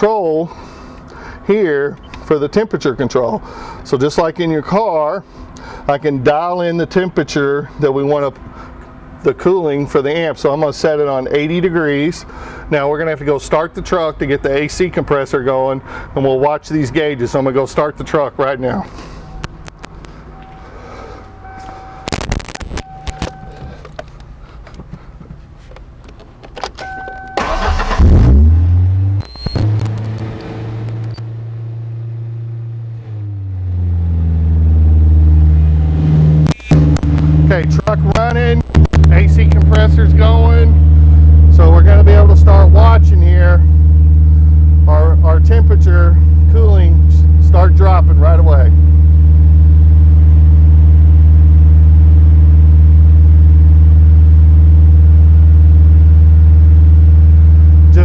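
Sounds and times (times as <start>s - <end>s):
pickup engine idling: 34.1s - 58.0s.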